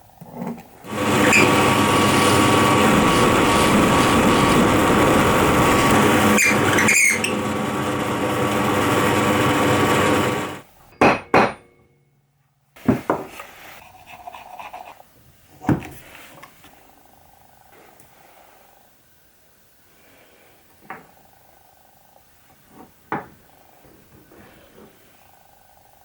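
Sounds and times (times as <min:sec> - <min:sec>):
machine buzzing: 0:00.9 - 0:10.7.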